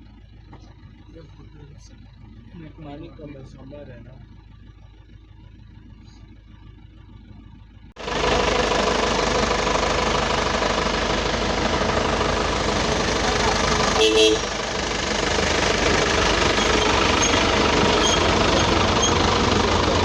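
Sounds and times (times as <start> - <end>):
vehicle engine running: 0.0 - 20.0
heavy noisy rush: 8.0 - 20.0.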